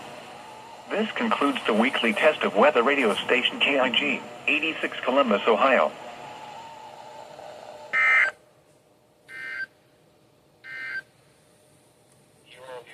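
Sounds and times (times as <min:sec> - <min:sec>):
warbling digital data tones: 0:00.0 - 0:08.4.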